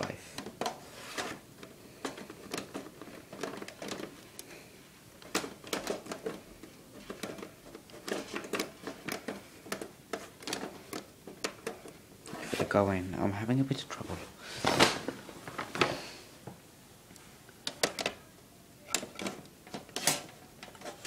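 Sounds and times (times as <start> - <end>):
metal and plastic rubbing: 0.0 - 13.0, 18.8 - 21.0.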